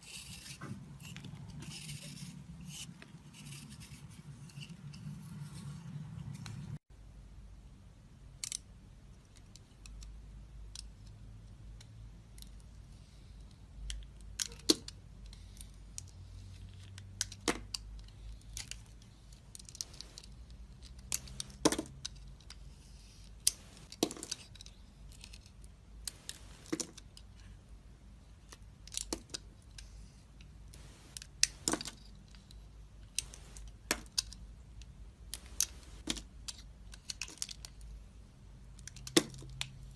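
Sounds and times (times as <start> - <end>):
knife crackling and scraping soap: 0.0 - 5.1.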